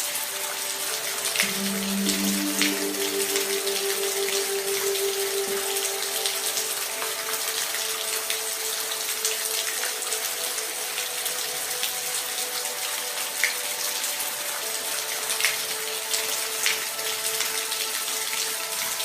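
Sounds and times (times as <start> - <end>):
steady rainfall: 0.0 - 19.0
faint low tones: 1.2 - 7.5.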